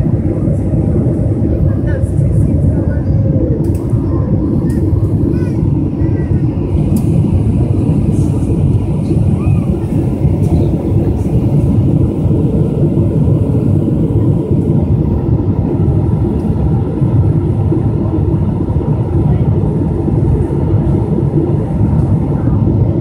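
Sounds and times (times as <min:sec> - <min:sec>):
jet engine drone in cabin: 0:00.0 - 0:23.0
rushing airflow: 0:00.0 - 0:23.0.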